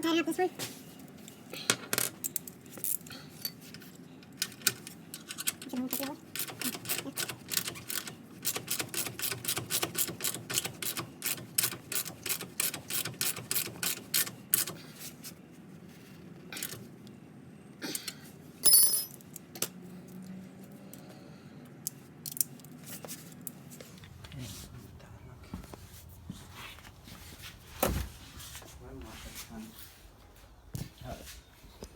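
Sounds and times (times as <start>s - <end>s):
ringing metallic clink: 18.6s - 19.2s.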